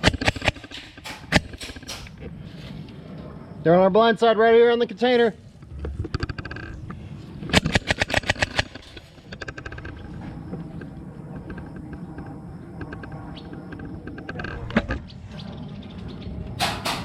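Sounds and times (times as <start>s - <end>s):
airsoft guns firing bursts: 0.0s - 2.0s.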